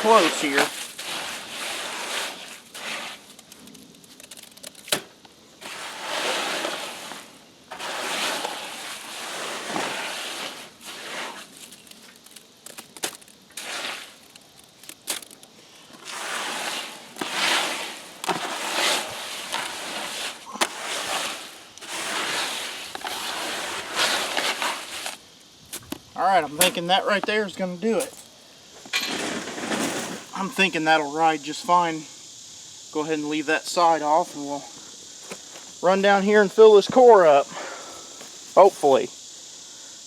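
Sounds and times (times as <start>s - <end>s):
tool scraping wet concrete: 0.0s - 3.5s, 5.6s - 14.3s, 15.9s - 25.2s.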